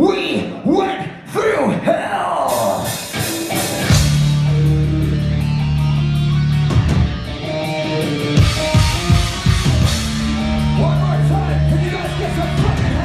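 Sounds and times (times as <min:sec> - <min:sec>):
distorted electric guitars: 0:02.5 - 0:13.0
drums hitting: 0:02.9 - 0:04.8, 0:08.3 - 0:13.0.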